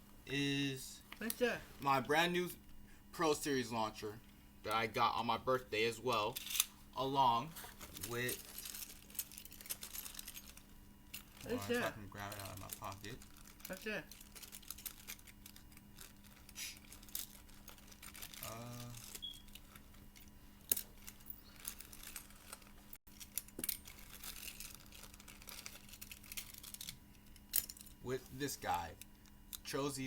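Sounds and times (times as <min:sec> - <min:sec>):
plastic parts clicking and rustling: 0:07.7 - 0:28.0.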